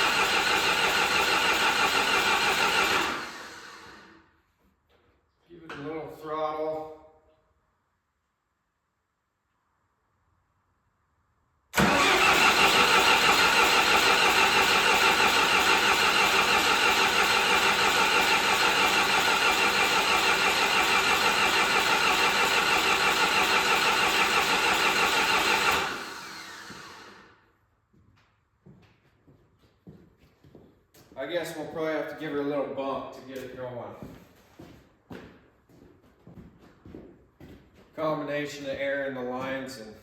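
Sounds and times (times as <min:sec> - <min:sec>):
diesel engine cranking: 0:00.0 - 0:04.1, 0:11.7 - 0:27.4.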